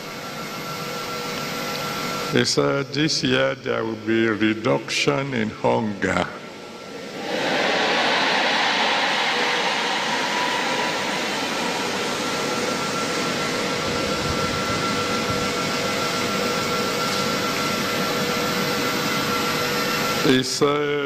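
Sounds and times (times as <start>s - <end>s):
crowd cheering and shouting: 7.1s - 13.4s.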